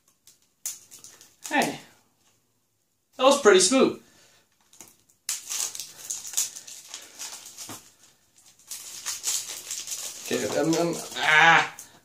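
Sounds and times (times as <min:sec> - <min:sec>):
cellophane wrap crinkling: 0:00.0 - 0:02.0, 0:04.5 - 0:12.0.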